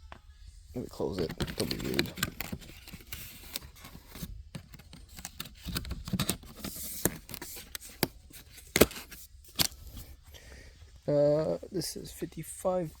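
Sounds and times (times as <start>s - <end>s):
cardboard scraping and rustling: 0.8s - 10.2s.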